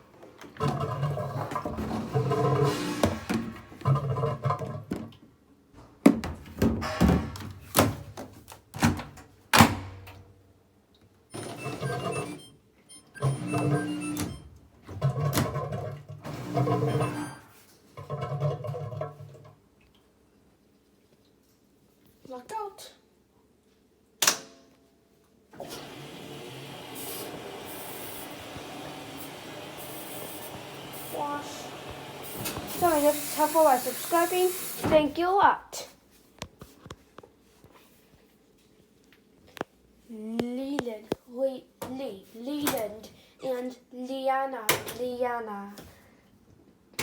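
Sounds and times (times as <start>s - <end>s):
water spraying into washing machine: 0.6s - 3.5s, 25.6s - 35.1s.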